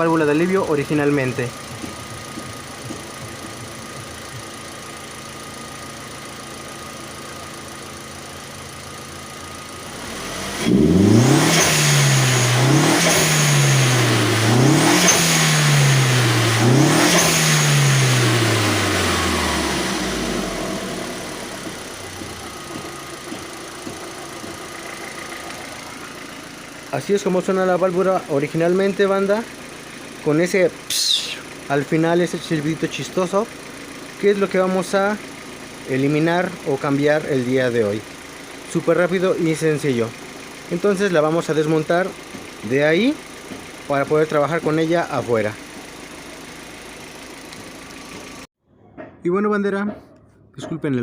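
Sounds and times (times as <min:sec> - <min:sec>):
car engine idling and revving: 0:00.0 - 0:49.1
blow-off valve psh and whistle: 0:30.9 - 0:31.4.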